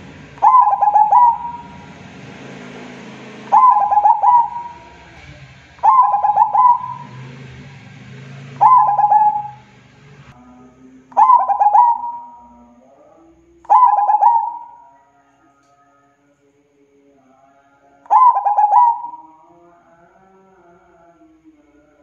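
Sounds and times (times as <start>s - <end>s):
dove stuttering coos: 0.0s - 2.0s, 3.4s - 7.6s, 8.2s - 9.7s, 11.2s - 12.5s, 13.7s - 14.8s, 18.1s - 19.3s.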